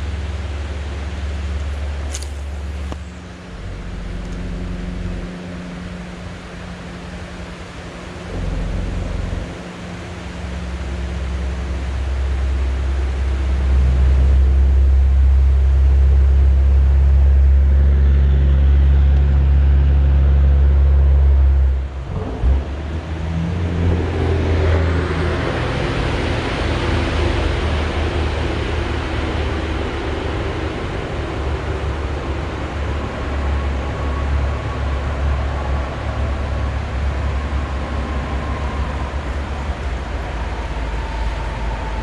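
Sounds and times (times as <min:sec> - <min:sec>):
low engine-like hum: 0:00.0 - 0:42.0
steady rushing noise: 0:00.0 - 0:42.0.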